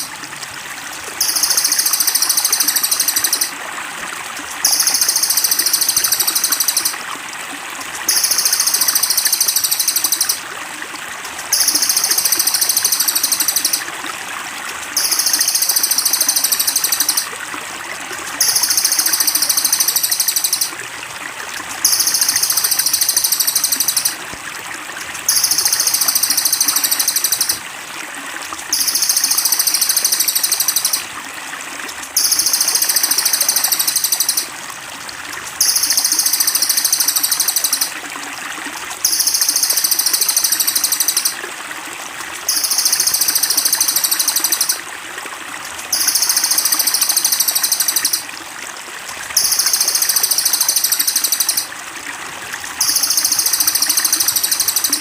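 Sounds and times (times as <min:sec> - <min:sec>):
trickling water: 0:00.0 - 0:55.0.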